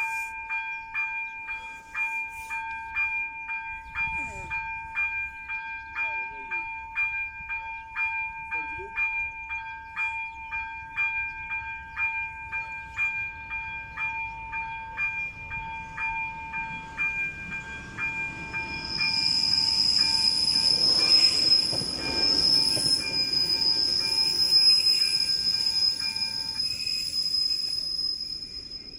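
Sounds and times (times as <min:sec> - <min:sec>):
level-crossing bell ringing: 0:00.0 - 0:28.9
train passing rumble: 0:00.0 - 0:28.9
high wheel squeal: 0:14.3 - 0:28.9.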